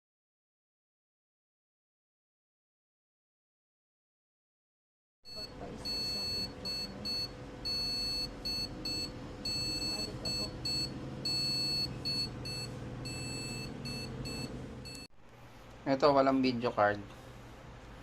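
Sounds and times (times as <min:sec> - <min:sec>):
computer error beeps: 0:05.3 - 0:15.1
computer humming: 0:05.3 - 0:18.0.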